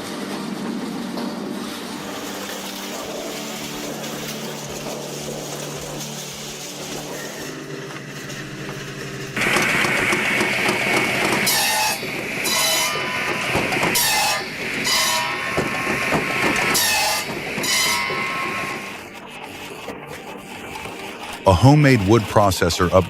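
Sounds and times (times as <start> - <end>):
engine running: 0.0 - 14.9
machine cutting wood: 0.0 - 23.0.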